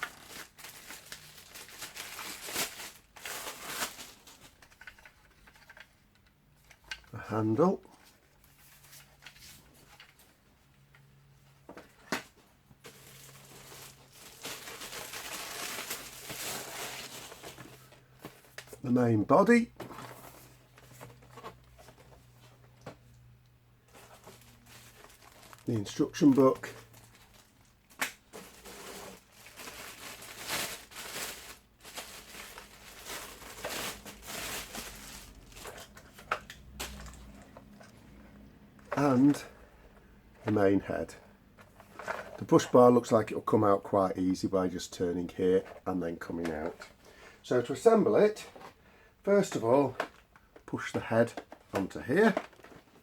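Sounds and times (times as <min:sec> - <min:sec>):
plastic packaging rustling: 0:00.0 - 0:07.2, 0:11.7 - 0:23.1, 0:23.9 - 0:42.8, 0:49.4 - 0:53.0.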